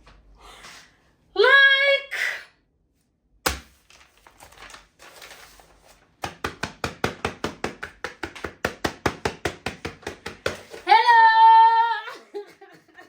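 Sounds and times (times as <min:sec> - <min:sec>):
fast sharp taps: 0:06.2 - 0:10.8.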